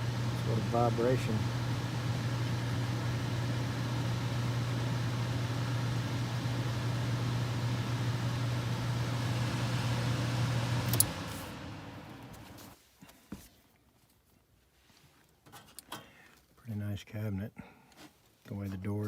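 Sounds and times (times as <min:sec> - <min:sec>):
furnace humming: 0:00.0 - 0:12.8.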